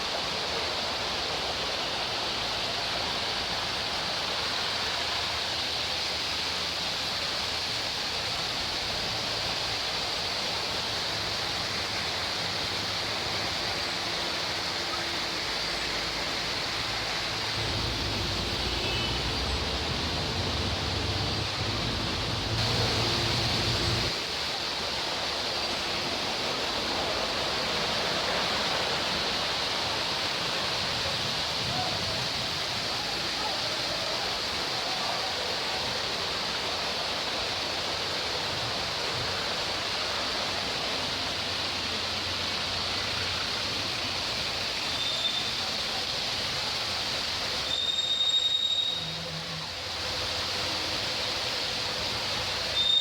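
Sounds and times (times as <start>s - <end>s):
heavy rain pouring: 0.0s - 53.0s.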